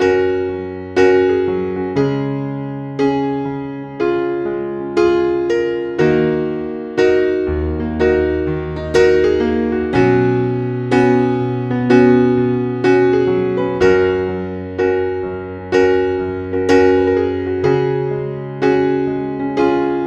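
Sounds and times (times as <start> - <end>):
piano chords: 0.0 - 20.0.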